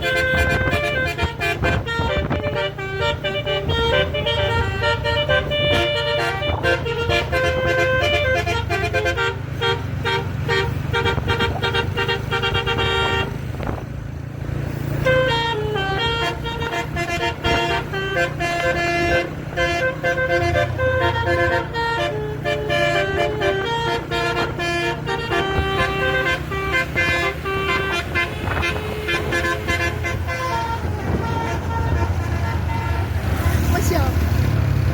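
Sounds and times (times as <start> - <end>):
air horns playing melody: 0.0 - 13.5, 15.0 - 33.7
bus engine rumbling: 0.0 - 34.9.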